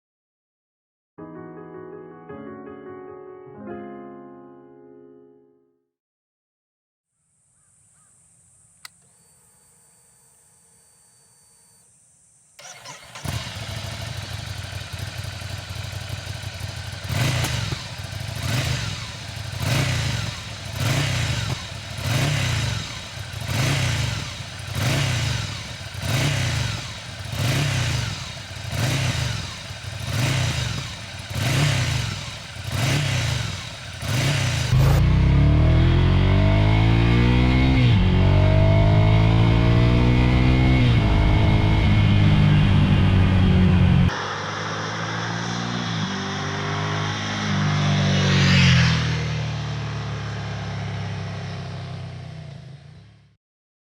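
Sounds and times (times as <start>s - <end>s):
motorcycle accelerating through gears: 12.6s - 53.4s
motorcycle engine revving: 12.6s - 53.4s.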